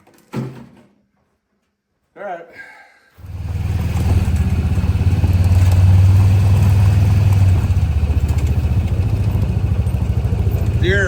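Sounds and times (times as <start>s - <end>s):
tractor diesel engine running: 3.2s - 11.0s.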